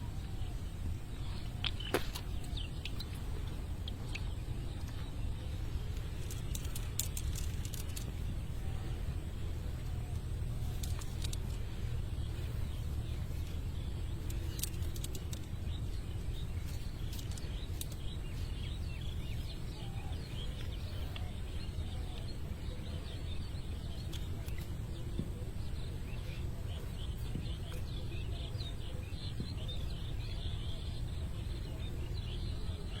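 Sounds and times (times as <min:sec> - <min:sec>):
faint bird chirps: 0:00.0 - 0:33.0
steady low rumble: 0:00.0 - 0:33.0
sharp clicks: 0:05.9 - 0:08.2.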